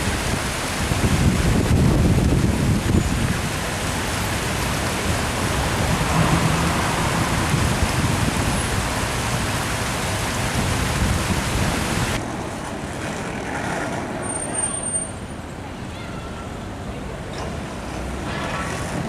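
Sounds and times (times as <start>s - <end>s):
steady rushing noise: 0.0s - 14.2s.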